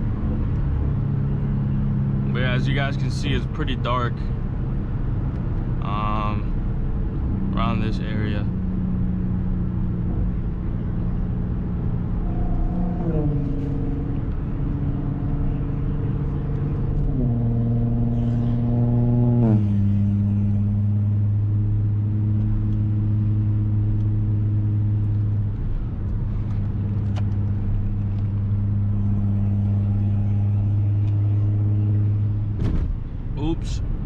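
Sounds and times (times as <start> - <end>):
car engine and exhaust drone: 0.0 - 34.0.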